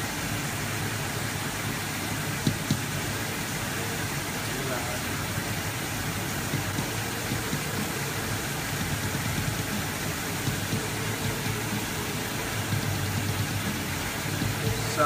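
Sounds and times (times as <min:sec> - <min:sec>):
pink noise hiss: 0:00.0 - 0:15.0
kick drum: 0:02.4 - 0:02.9, 0:06.4 - 0:15.0.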